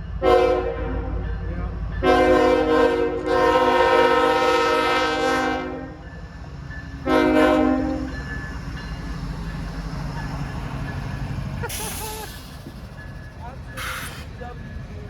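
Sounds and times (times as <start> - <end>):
freight train rumbling: 0.0 - 15.0
locomotive air horn blasts: 0.2 - 1.2, 2.0 - 6.0, 7.0 - 8.1.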